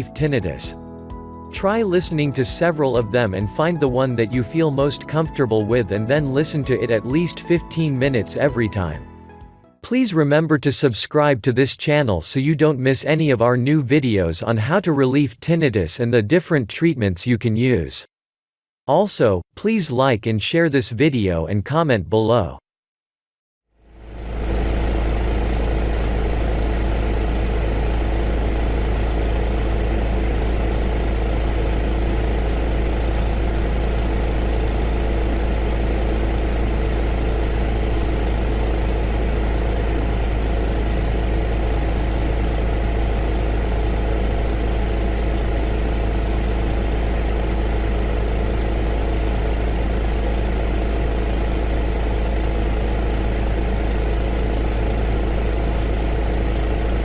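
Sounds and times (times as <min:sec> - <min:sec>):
deep hum: 0:00.0 - 0:09.5, 0:23.8 - 0:57.0
heater running: 0:23.9 - 0:57.0.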